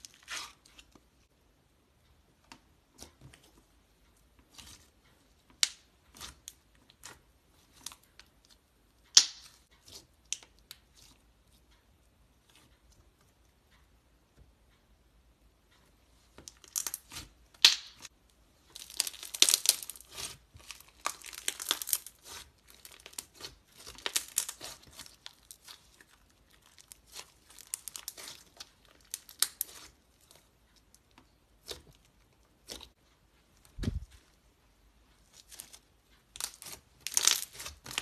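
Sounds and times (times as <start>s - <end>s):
slime crackling and popping: 9.0s - 11.1s, 16.4s - 31.0s, 35.4s - 38.0s.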